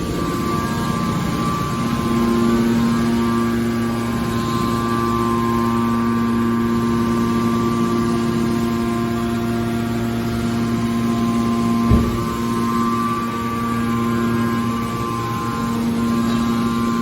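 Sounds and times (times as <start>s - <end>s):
hydraulic power unit humming: 0.0s - 17.0s
short knock: 11.9s - 12.5s.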